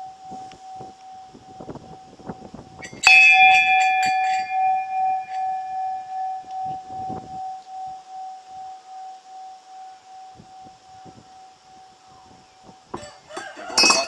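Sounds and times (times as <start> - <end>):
brass bell ringing: 2.8 - 7.9.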